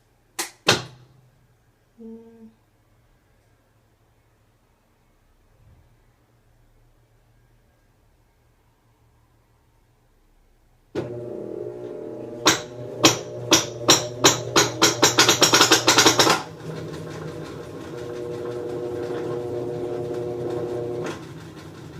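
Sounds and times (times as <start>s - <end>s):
washing machine motor hum: 11.0s - 21.9s.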